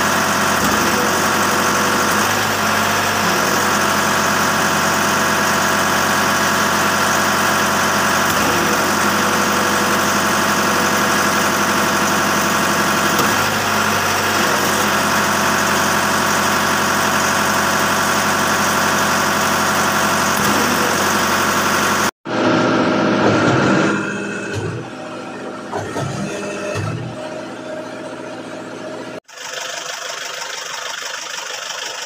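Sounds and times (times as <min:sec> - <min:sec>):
concrete pump engine running: 0:00.0 - 0:32.0.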